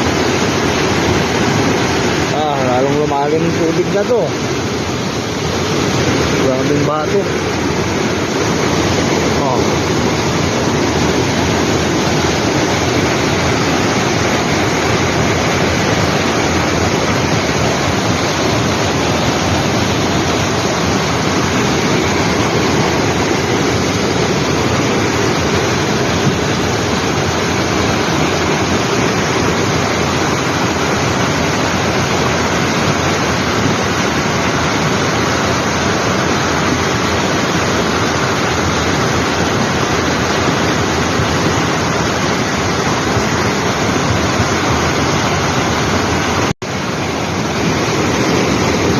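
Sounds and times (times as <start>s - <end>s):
water rushing over rocks: 0.0s - 48.9s.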